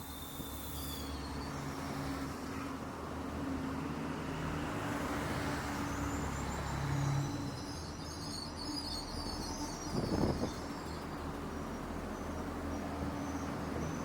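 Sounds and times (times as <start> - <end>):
train running hum: 0.0 - 14.0.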